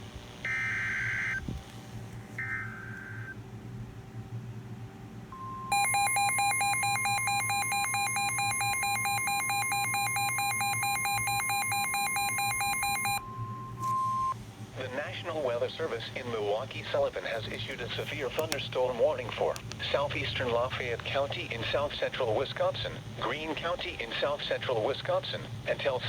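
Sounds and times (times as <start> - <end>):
rapid electronic beeping alarm: 5.4 - 15.3
steady alarm tone: 5.4 - 16.0.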